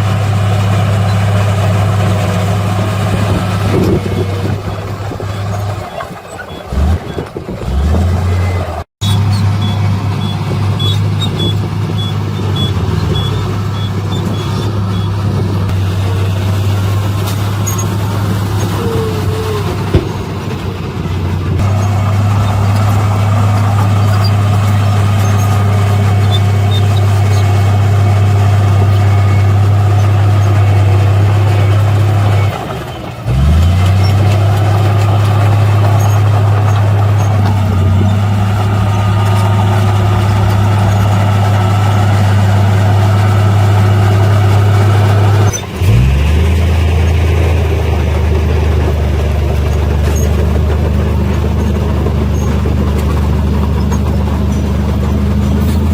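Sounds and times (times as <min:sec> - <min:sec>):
heavy diesel engine running: 0:00.0 - 0:55.9
reversing beeper: 0:03.8 - 0:15.2.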